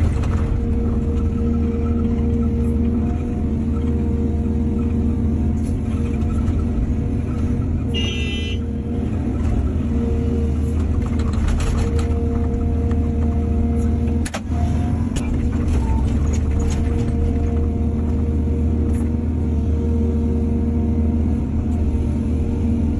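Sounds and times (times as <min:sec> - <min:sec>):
knocks and clatter: 0:00.0 - 0:02.4, 0:10.8 - 0:13.4, 0:15.1 - 0:17.7
excavator diesel engine running: 0:00.0 - 0:22.9.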